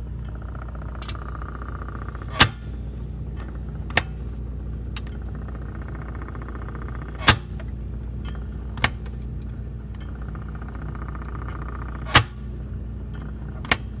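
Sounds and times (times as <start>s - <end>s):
refrigerator running hum: 0.0s - 14.0s
refrigerator knocking: 0.8s - 2.9s, 12.0s - 12.5s.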